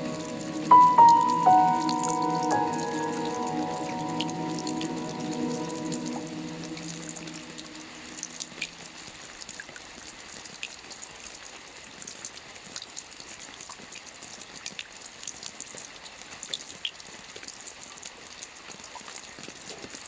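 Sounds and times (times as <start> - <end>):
steady rain hiss: 0.0 - 9.8.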